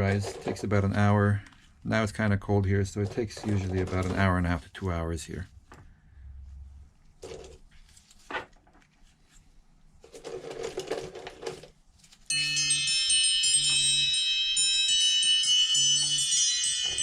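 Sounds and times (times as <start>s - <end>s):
scraping rustle of handling: 2.7s - 5.7s, 7.0s - 12.3s
music with chime-like bell tones: 12.3s - 17.0s.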